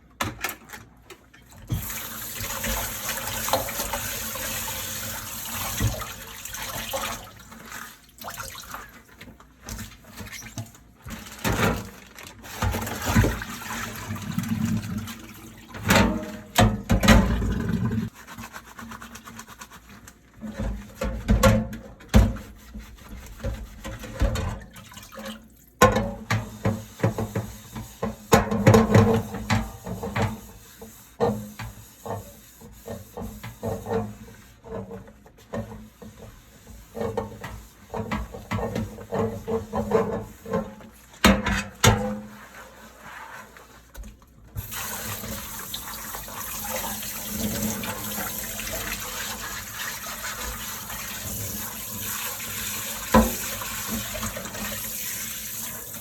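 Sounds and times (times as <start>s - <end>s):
tap water running: 1.5s - 18.2s, 22.2s - 56.0s
scrubbing strokes: 18.1s - 20.4s, 42.2s - 56.0s.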